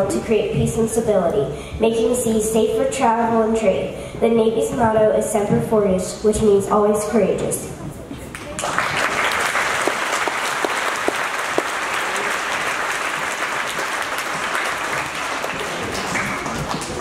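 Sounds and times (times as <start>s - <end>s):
audience applauding: 8.3s - 17.0s.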